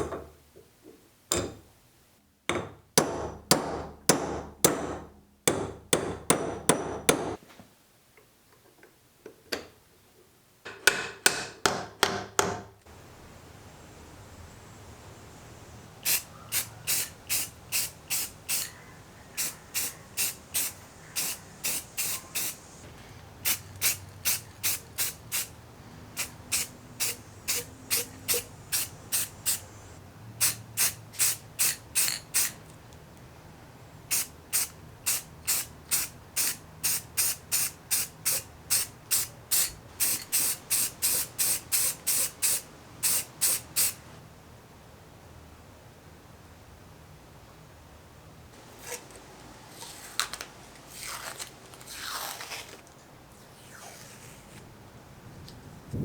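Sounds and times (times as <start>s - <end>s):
aerosol spray can hissing: 16.0s - 18.8s, 19.4s - 22.8s, 23.4s - 32.6s, 34.1s - 44.0s.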